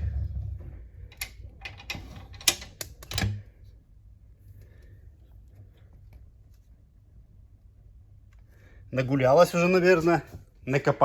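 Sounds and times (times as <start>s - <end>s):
door lock and latch clicking: 1.2s - 3.4s.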